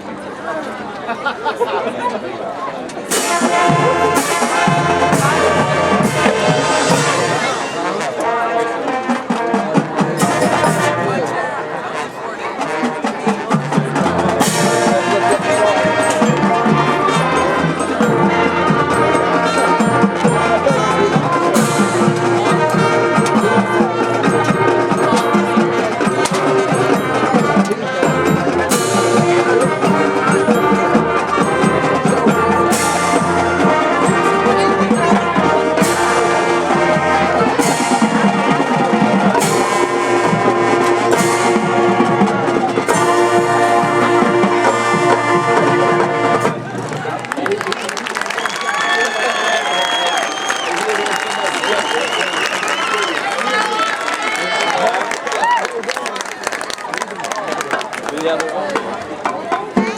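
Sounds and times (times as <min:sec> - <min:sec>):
marching band playing: 0:03.0 - 0:59.9.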